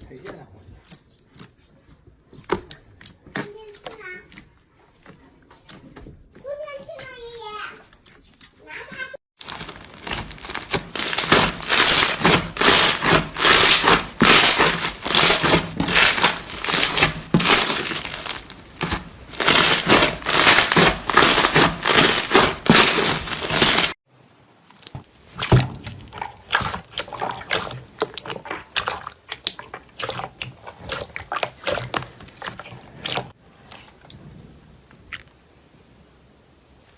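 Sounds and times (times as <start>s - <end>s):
slime squishing by hand: 8.0s - 24.0s, 24.7s - 34.0s.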